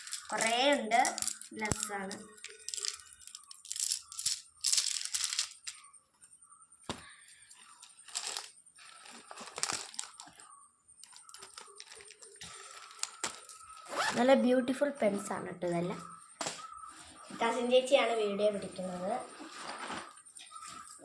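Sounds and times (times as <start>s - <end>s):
plastic pens clicking: 0.0s - 5.7s
packaging rustling: 7.8s - 10.4s, 11.0s - 14.0s.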